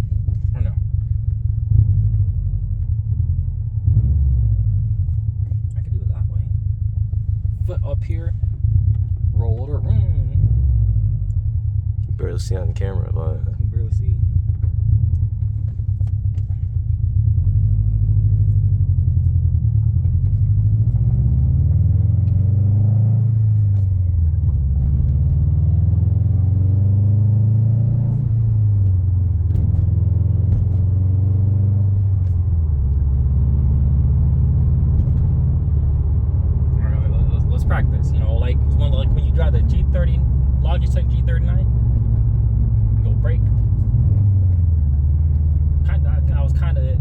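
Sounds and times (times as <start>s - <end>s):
car engine revving while driving: 0.0s - 6.4s, 7.2s - 47.0s.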